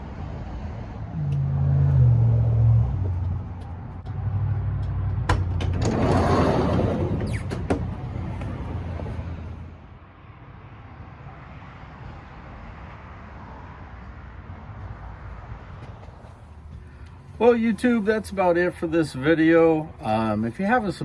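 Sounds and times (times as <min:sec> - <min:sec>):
motor vehicle humming: 0:00.0 - 0:09.9.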